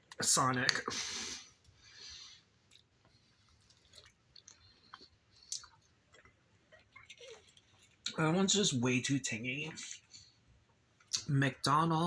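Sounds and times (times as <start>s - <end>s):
quiet chewing: 1.6s - 8.2s
soft mouth clicks: 3.7s - 6.3s.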